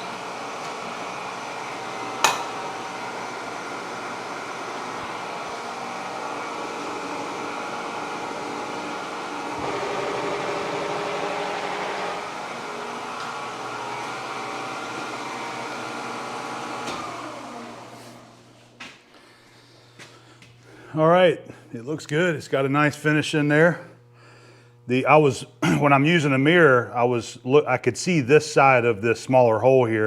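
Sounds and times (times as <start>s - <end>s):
milling machine whining: 0.0s - 18.6s.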